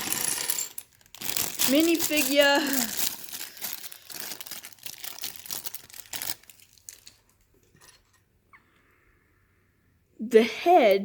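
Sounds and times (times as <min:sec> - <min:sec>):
plastic bag crinkling and tearing: 0:00.0 - 0:07.4.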